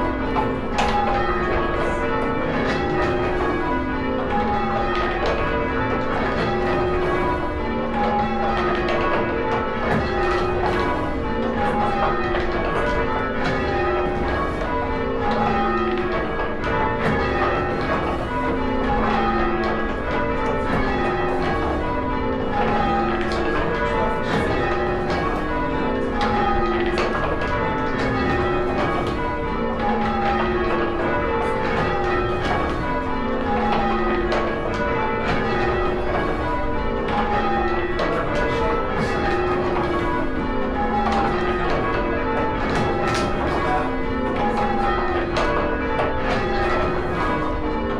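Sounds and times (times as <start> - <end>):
church bells change ringing: 0.0 - 47.9.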